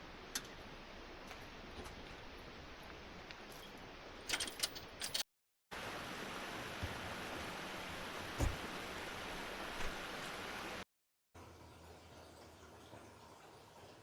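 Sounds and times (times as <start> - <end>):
river water rushing: 5.8 - 10.8
dull thump: 8.3 - 8.8.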